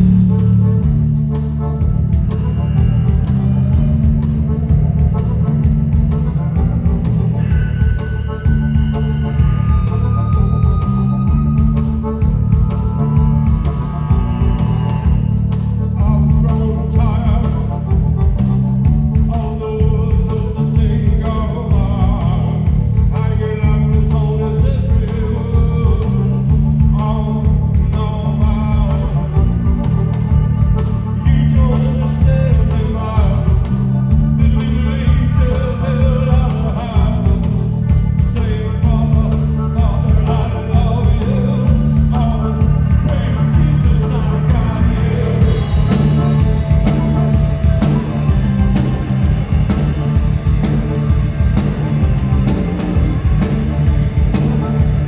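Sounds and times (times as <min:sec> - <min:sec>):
live band playing: 0:00.0 - 0:55.0
person singing: 0:30.6 - 0:55.0.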